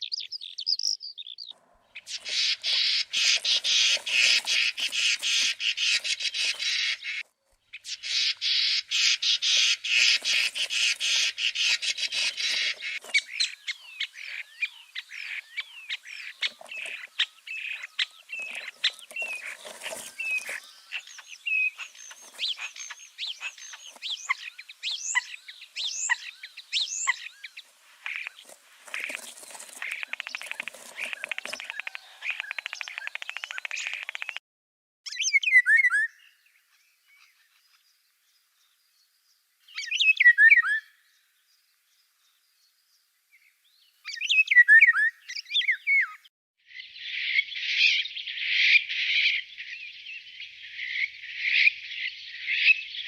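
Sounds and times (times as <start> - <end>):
birds chirping and whistling: 0.0 - 7.2, 7.8 - 34.4, 35.1 - 36.4, 39.7 - 41.0, 44.1 - 46.2
songbird fast trill: 0.0 - 34.4.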